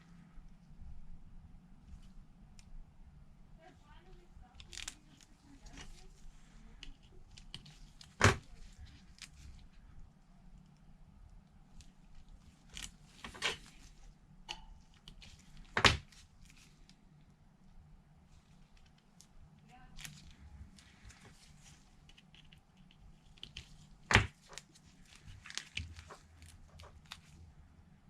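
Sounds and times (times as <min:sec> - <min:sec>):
adhesive tape scratching and rustling: 0:04.0 - 0:09.8, 0:11.7 - 0:14.2, 0:18.4 - 0:27.4.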